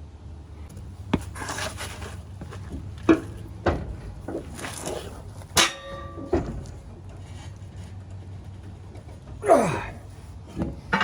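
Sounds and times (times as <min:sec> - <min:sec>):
metal clank with ringing: 0:05.6 - 0:06.8.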